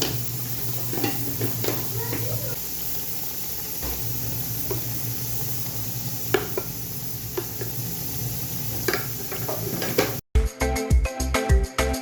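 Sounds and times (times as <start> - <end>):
steady hiss: 0.0 - 10.2
spoon scraping a pot: 0.8 - 1.9, 8.8 - 10.2.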